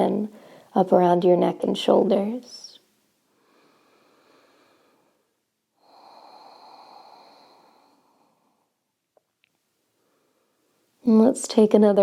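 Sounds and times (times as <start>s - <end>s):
person breathing softly: 0.3s - 0.8s, 3.2s - 8.9s, 9.9s - 11.0s.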